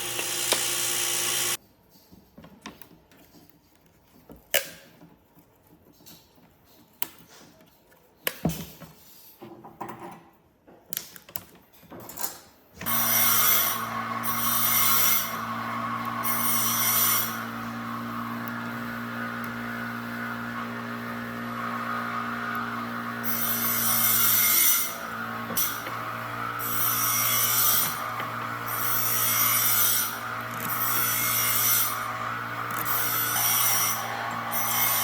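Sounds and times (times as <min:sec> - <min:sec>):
power tool cutting wood: 0:00.0 - 0:01.6, 0:12.8 - 0:35.0
knocks and clatters of wood and tools: 0:01.9 - 0:12.9.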